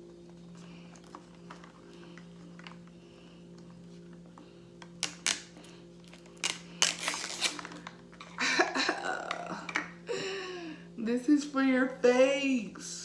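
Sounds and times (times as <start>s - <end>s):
plastic packaging clicks and snaps: 4.8s - 8.0s
packaging crinkling: 4.9s - 8.2s.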